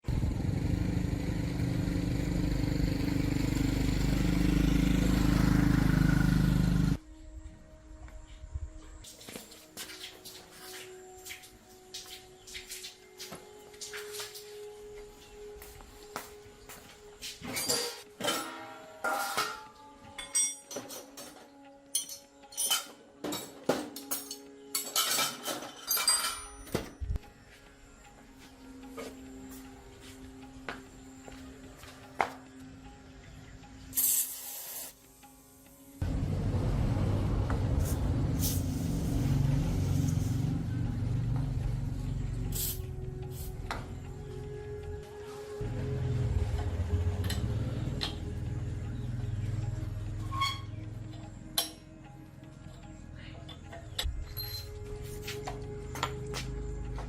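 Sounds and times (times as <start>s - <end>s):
small motorcycle engine running: 0.0s - 7.0s, 36.0s - 44.4s, 45.6s - 51.3s
metal parts clinking: 17.5s - 26.9s.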